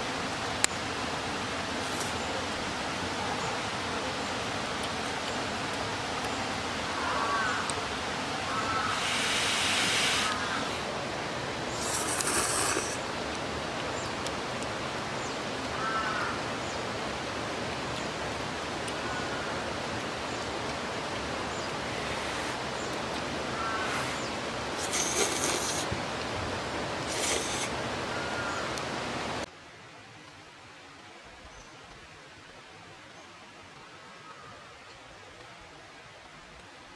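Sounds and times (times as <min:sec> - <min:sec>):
mountain stream flowing: 0:00.0 - 0:31.3
high hissing bursts: 0:08.8 - 0:10.9, 0:11.7 - 0:13.0, 0:21.9 - 0:22.8, 0:23.8 - 0:26.0, 0:27.0 - 0:27.8.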